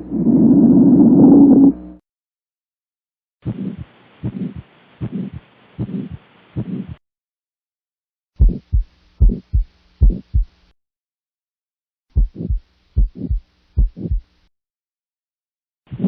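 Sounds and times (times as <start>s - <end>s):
heartbeat through a stethoscope: 3.4s - 7.0s, 8.4s - 10.6s, 12.1s - 14.3s.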